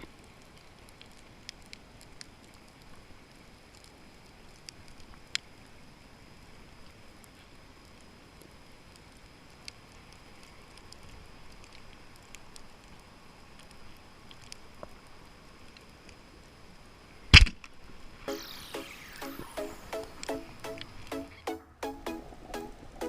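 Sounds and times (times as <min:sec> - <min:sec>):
small clicks underwater: 0:00.0 - 0:05.6, 0:08.9 - 0:16.2
underwater ambience: 0:18.2 - 0:23.0
rhythmic music: 0:18.3 - 0:23.0.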